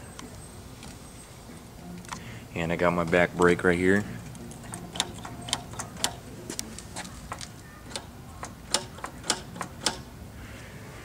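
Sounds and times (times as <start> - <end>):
sharp clicks: 4.2 - 10.1.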